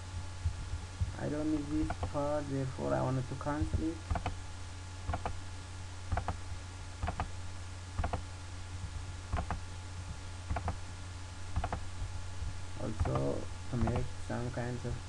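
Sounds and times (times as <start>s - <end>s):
steady low hum: 0.0s - 15.0s
computer mouse clicks: 1.8s - 2.1s, 4.1s - 4.4s, 5.1s - 5.4s, 6.1s - 6.4s, 7.0s - 7.3s, 8.0s - 8.2s, 9.3s - 9.6s, 10.5s - 10.8s, 11.6s - 11.8s, 13.0s - 14.1s.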